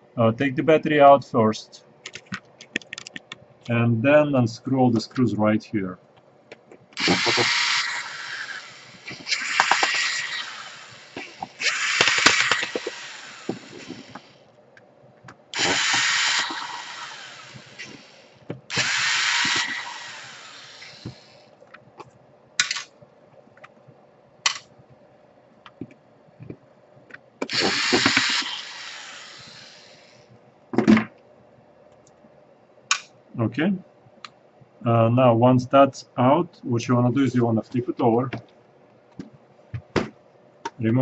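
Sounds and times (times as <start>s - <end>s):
sharp clicks: 2.0s - 3.4s, 32.9s - 33.1s
electric screwdriver running: 7.0s - 14.4s, 15.6s - 21.4s, 27.4s - 30.2s.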